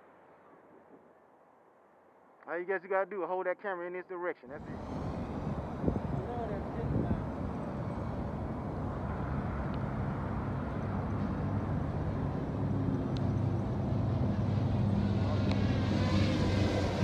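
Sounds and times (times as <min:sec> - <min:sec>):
drone motors and propellers whirring: 0:04.6 - 0:17.0.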